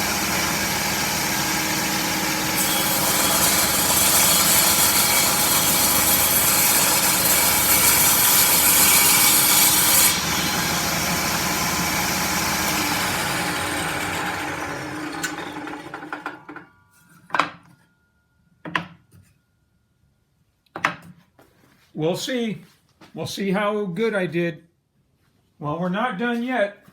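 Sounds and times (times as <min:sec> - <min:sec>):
table saw cutting wood: 0:00.0 - 0:16.7.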